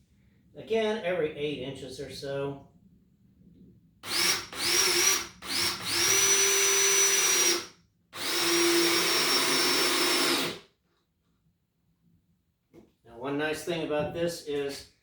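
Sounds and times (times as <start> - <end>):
drill driver driving screws: 4.0 - 10.6.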